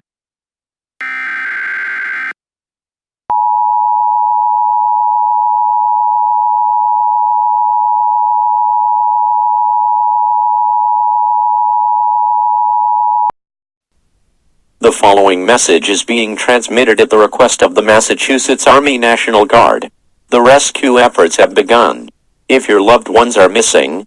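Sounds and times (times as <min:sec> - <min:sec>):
loud steady electronic tone: 0:01.0 - 0:02.4.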